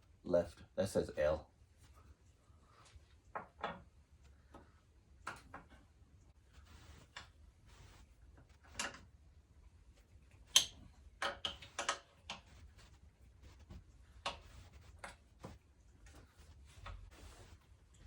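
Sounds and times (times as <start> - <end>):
pedal threaded and tightened: 10.5 - 12.9.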